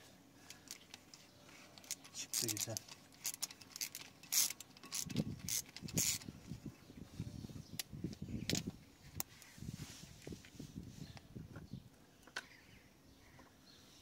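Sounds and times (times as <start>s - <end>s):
low rumbling handling noise: 0.0s - 11.9s.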